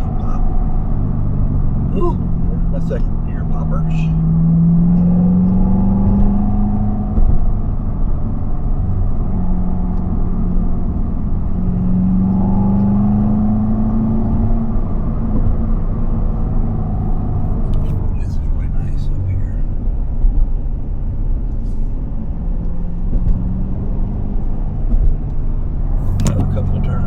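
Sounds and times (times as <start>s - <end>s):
car engine revving: 0.0s - 27.0s
exhaust pop: 24.8s - 27.0s.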